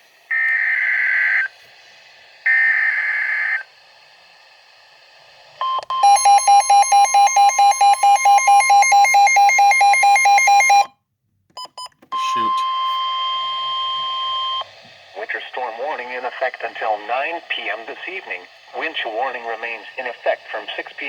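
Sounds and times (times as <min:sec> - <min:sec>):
pulsing alarm beep: 0:05.6 - 0:10.9, 0:11.6 - 0:14.7
steady warning tone: 0:05.9 - 0:10.9, 0:12.2 - 0:21.0.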